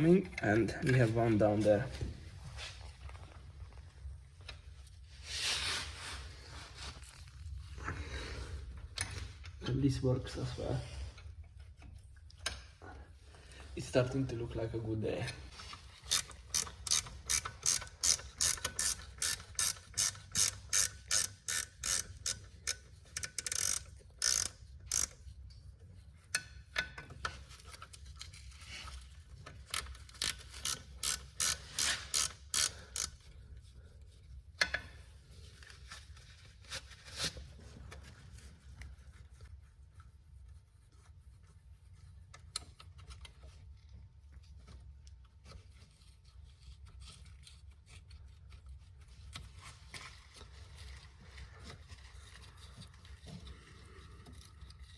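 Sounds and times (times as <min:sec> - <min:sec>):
ratchet wrench clicking: 0:16.1 - 0:25.2, 0:29.7 - 0:33.2.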